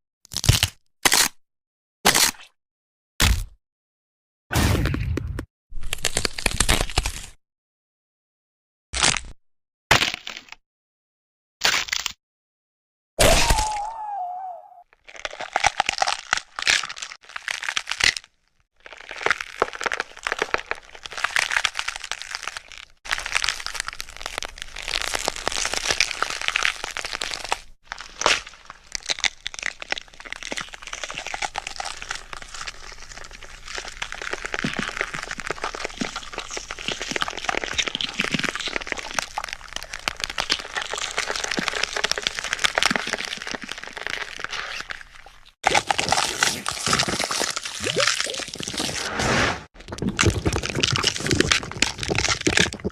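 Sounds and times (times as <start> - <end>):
bones cracking and crunching: 0.3 - 1.4, 4.7 - 7.4, 9.0 - 10.6, 11.6 - 12.2, 13.2 - 14.2, 14.9 - 49.1, 49.8 - 52.9.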